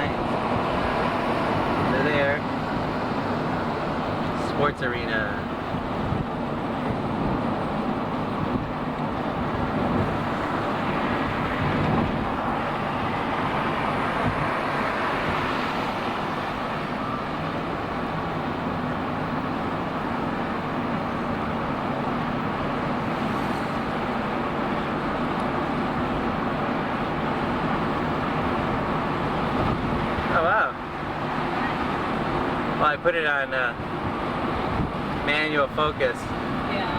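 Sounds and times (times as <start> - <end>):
car engine and road noise: 0.0 - 36.9.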